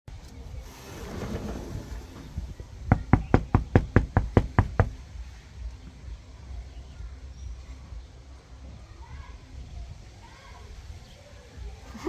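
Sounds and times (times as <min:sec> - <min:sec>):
quick knocking raps: 0:02.9 - 0:05.1.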